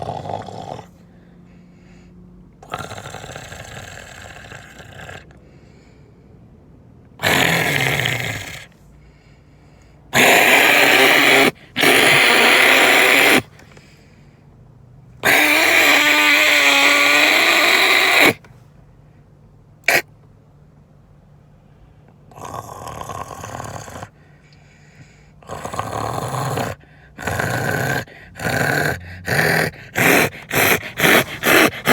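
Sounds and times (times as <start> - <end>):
harsh vocal noises: 10.2 - 13.5, 25.5 - 31.9.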